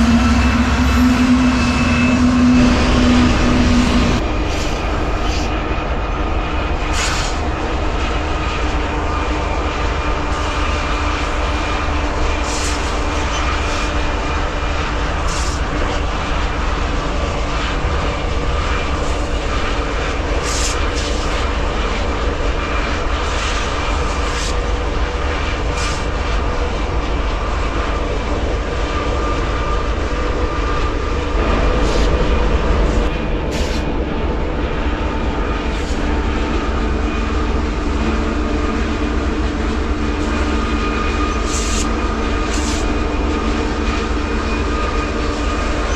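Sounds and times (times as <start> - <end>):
diesel train rumbling: 0.0 - 45.9.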